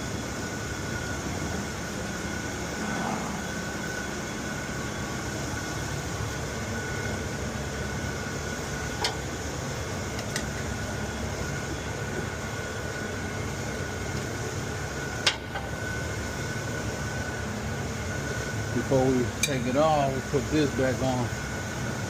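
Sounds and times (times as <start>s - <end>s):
machinery drone with whine: 0.0s - 22.0s.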